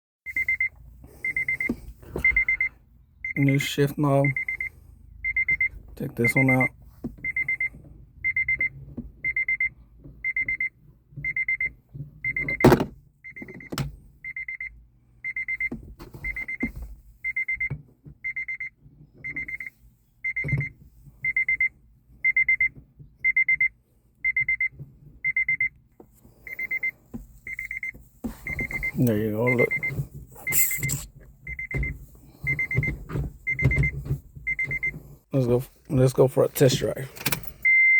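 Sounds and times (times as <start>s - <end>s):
car warning chime beeping: 0.3s - 25.8s, 26.4s - 35.0s, 36.7s - 37.9s
knocks and clunks at gear shifter: 5.3s - 14.1s, 15.4s - 19.7s, 20.3s - 21.0s, 27.0s - 30.3s, 31.0s - 35.2s.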